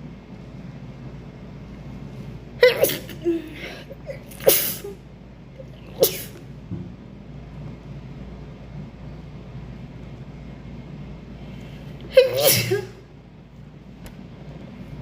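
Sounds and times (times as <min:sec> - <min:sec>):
woman sneezing: 0:02.6 - 0:05.0, 0:05.9 - 0:06.4, 0:12.1 - 0:13.0.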